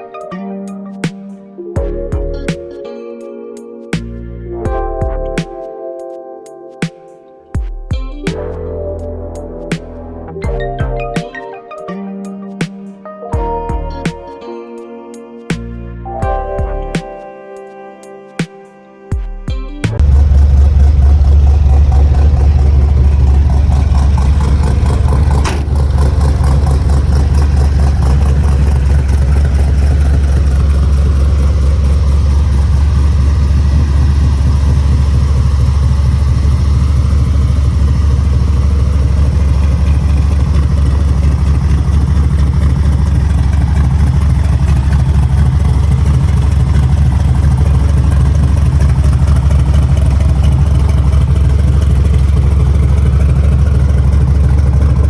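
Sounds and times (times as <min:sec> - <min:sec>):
car engine idling: 0:20.0 - 0:55.0.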